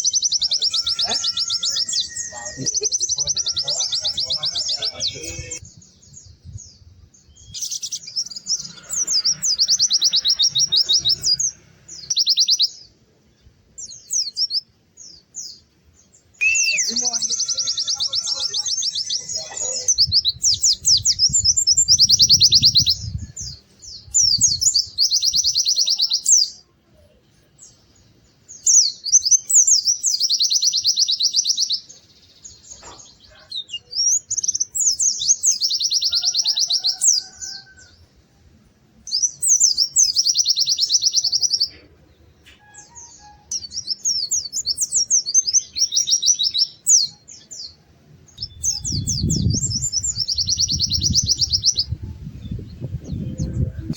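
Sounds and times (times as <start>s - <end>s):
bird singing high trills: 0.0s - 5.8s, 16.4s - 26.6s, 42.4s - 47.5s.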